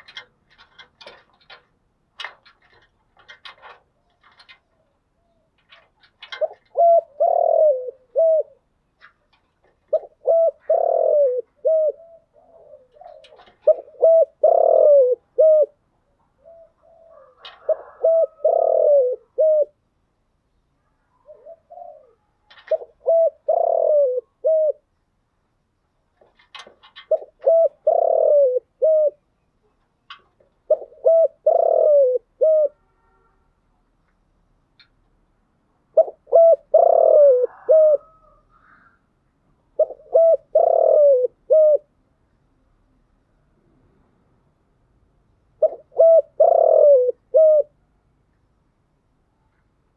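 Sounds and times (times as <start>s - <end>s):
dove cooing: 0.0s - 1.6s, 2.2s - 19.8s, 21.1s - 25.0s, 26.2s - 33.3s, 35.9s - 39.0s, 39.7s - 41.9s, 45.6s - 47.8s.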